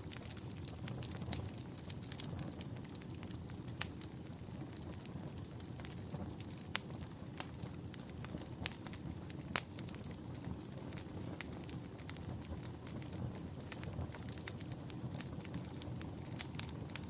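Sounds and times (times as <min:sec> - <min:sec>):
sharp pops of fire: 0:00.0 - 0:17.0
wood fire crackling: 0:00.0 - 0:17.0.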